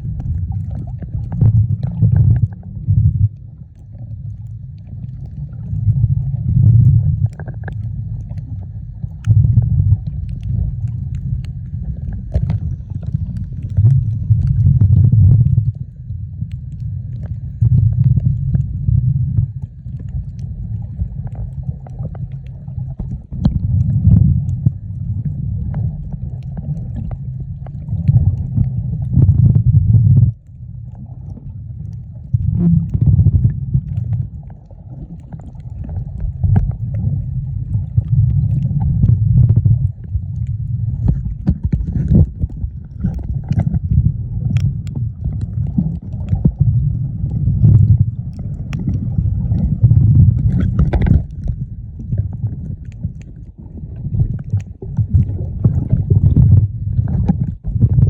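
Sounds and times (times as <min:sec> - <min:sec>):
muffled underwater rumbling: 0:00.0 - 0:58.0.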